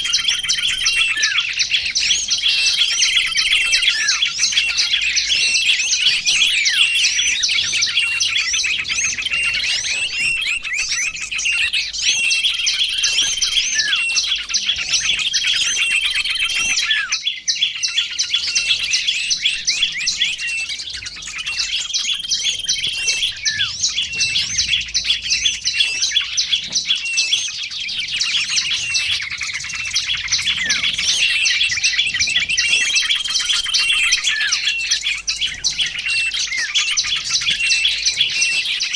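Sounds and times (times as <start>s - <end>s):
songbirds twittering: 0.0s - 38.9s.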